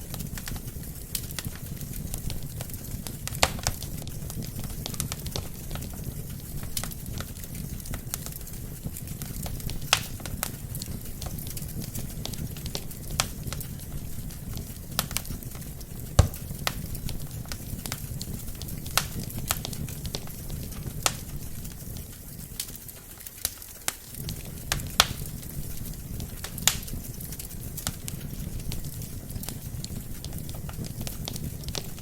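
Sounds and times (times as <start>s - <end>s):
logs crackling and popping: 0.0s - 32.0s
low flame rumble: 0.0s - 32.0s.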